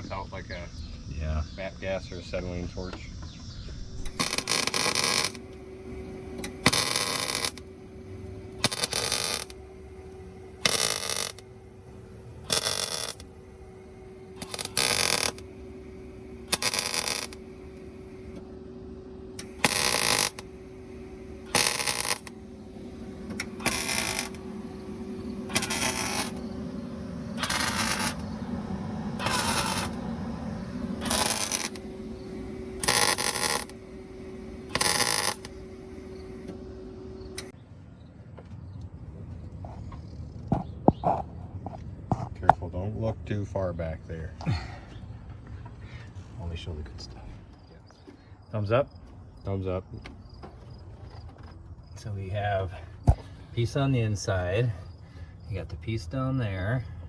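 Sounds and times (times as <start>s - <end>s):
steady hum: 0.0s - 51.3s, 51.9s - 57.0s
welding arc bursts: 3.9s - 18.5s, 19.3s - 36.6s.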